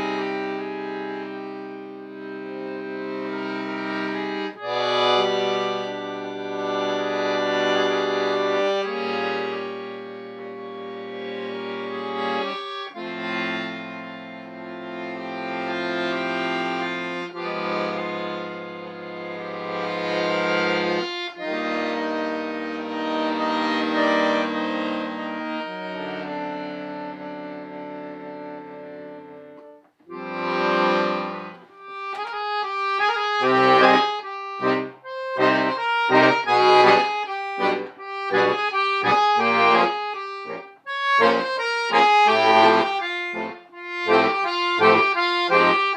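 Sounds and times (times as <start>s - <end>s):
accordion chords: 0.0s - 45.9s.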